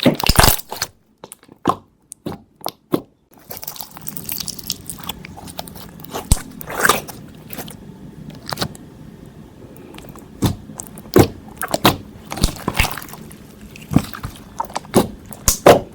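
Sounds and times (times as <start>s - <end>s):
slime squishing: 0.0s - 8.8s, 9.7s - 15.9s
slime air pockets popping: 10.1s - 13.2s, 13.8s - 15.9s.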